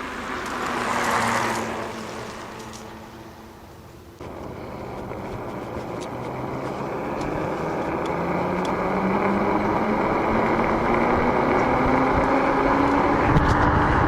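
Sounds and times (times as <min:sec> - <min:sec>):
electric motor whine: 0:00.0 - 0:14.0.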